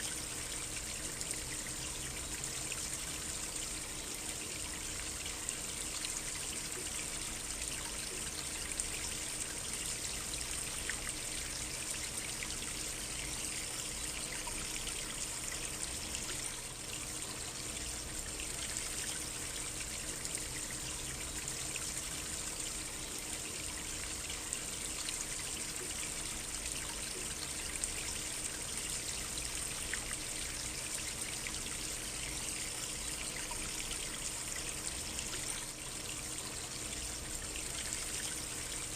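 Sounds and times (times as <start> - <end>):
small stream trickling: 0.0 - 38.9.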